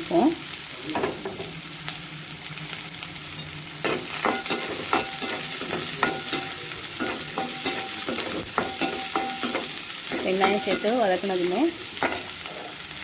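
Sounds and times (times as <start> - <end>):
onions sizzling in hot oil: 0.0 - 13.0
spoon scraping pan: 3.8 - 12.8.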